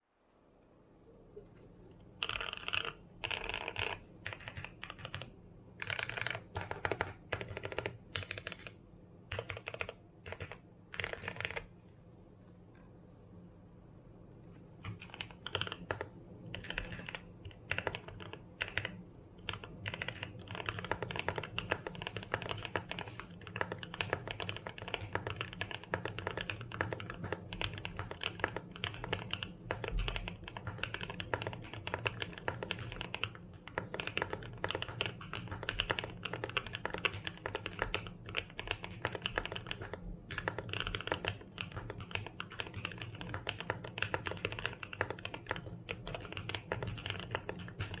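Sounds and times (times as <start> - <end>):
typing on mechanical keyboard: 2.2 - 11.8, 14.8 - 48.0.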